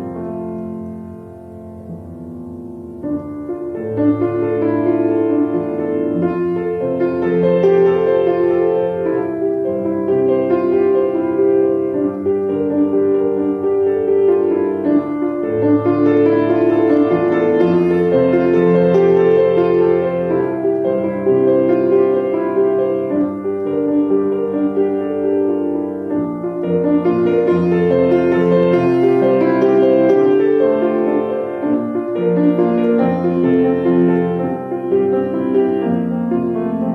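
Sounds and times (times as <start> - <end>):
gentle solo piano piece: 0.0 - 36.9.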